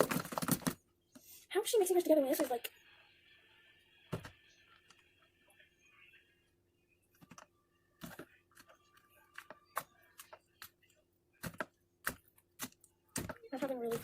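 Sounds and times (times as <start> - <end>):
faint clicks and taps: 7.1 - 14.0.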